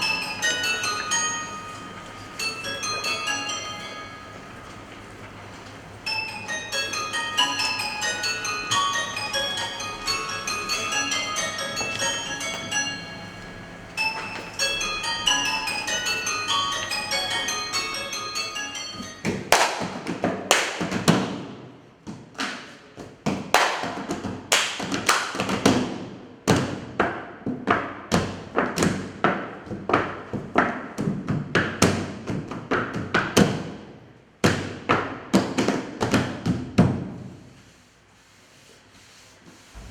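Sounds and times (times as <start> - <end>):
ringing percussion strikes: 0.0 - 5.4, 6.0 - 21.0
tuned percussion melody: 0.0 - 20.8.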